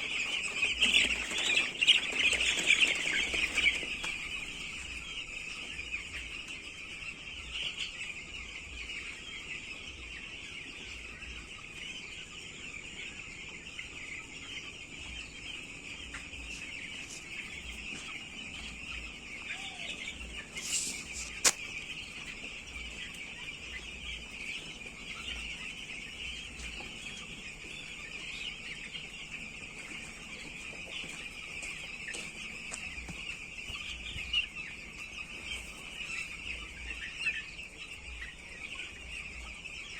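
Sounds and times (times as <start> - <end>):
chickens chirping and clucking: 0.0 - 39.9
sharp click: 21.3 - 21.6.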